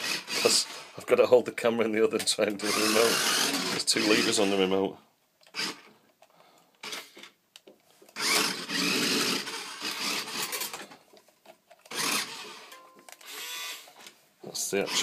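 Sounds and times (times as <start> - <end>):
toy robot gear motors whirring: 0.0 - 0.9, 2.6 - 4.6, 8.2 - 10.8, 11.7 - 13.9, 14.8 - 15.0.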